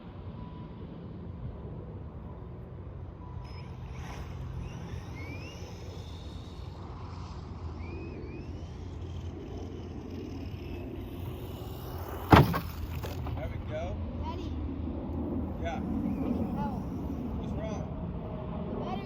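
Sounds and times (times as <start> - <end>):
low outdoor rumble: 0.0 - 19.0
faint rising chirps: 2.2 - 13.1, 15.4 - 17.8
sharp thump: 12.1 - 13.5.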